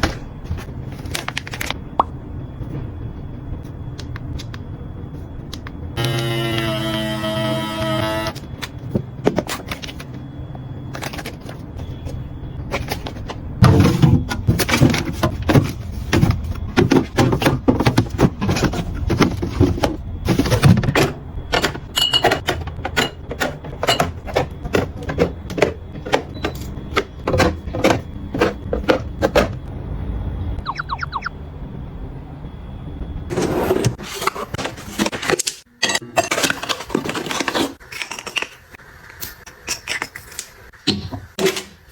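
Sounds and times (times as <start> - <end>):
items being picked up and set down: 10.9 - 29.6.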